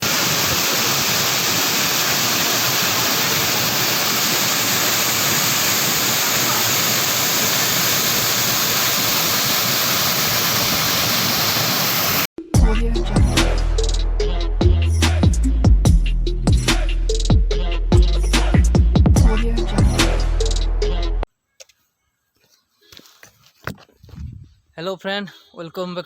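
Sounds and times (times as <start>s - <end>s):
waterfall rushing: 0.0s - 12.3s.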